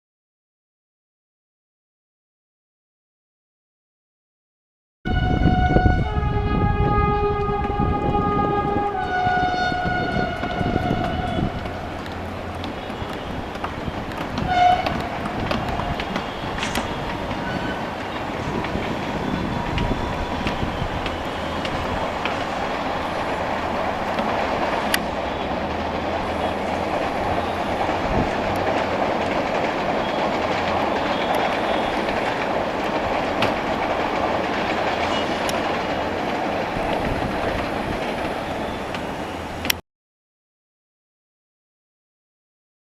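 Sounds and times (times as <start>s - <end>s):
train horn blast: 5.1s - 12.0s, 14.4s - 17.8s, 31.0s - 32.1s
train wheels clattering on rails: 9.2s - 39.8s.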